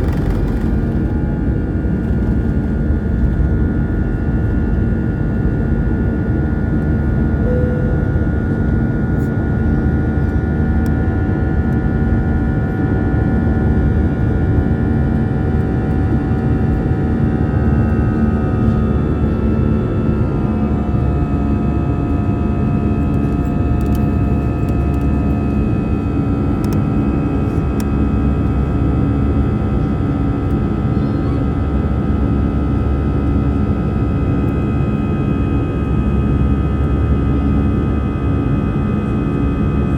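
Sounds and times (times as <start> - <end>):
airplane cabin engine drone: 0.0 - 39.9.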